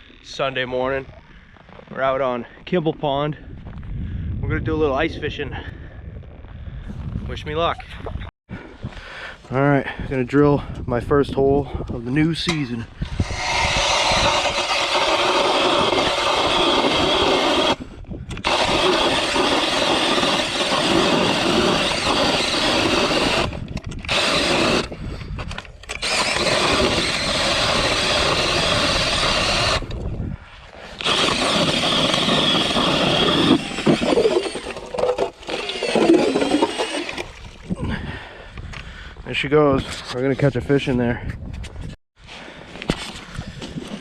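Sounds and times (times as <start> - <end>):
power ice auger boring: 13.0 - 25.0, 25.9 - 30.0, 31.0 - 37.6.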